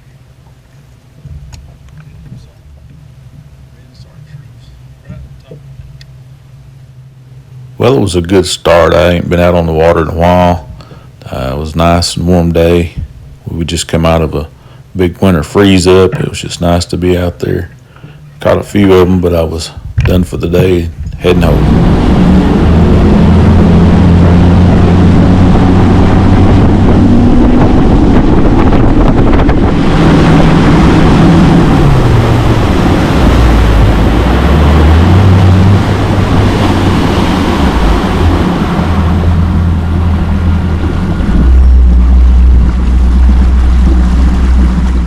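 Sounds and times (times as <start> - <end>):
boat motor running: 0.0 - 45.0
wind noise on microphone: 1.1 - 3.5, 7.8 - 14.4, 19.7 - 45.0
rushing water: 20.7 - 45.0.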